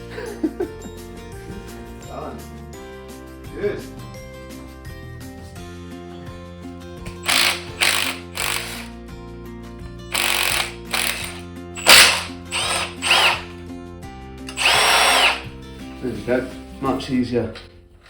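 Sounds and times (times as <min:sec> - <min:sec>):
background music: 0:00.0 - 0:18.0
power tool whining in bursts: 0:07.2 - 0:08.9, 0:10.1 - 0:13.6, 0:14.5 - 0:15.5.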